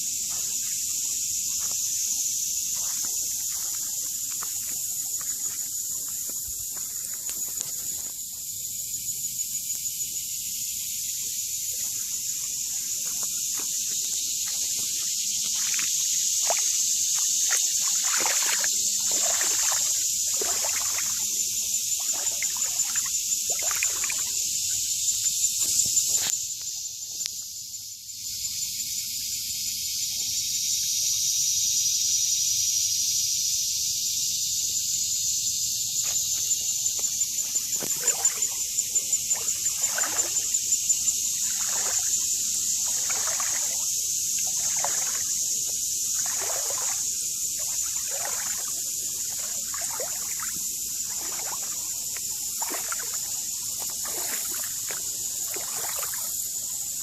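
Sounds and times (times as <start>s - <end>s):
high-pitched pulsing hiss: 0.0s - 26.6s
footsteps crunching on forest floor: 0.1s - 8.2s, 12.9s - 21.4s, 36.0s - 38.5s, 39.3s - 56.2s.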